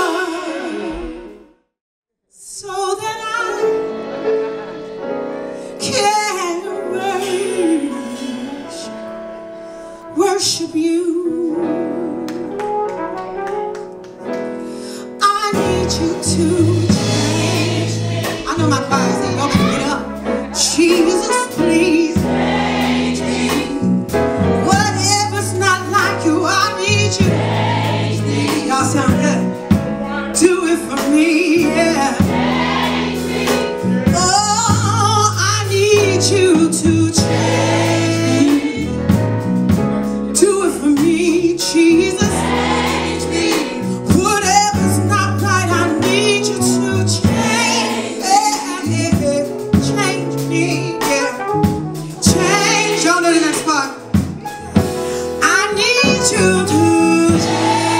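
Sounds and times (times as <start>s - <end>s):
gospel choir singing: 0.0s - 1.4s, 16.2s - 34.8s, 36.8s - 39.4s, 40.9s - 49.2s, 52.2s - 54.0s, 56.1s - 57.9s
band playing bass and chords: 3.4s - 8.5s, 15.3s - 57.9s.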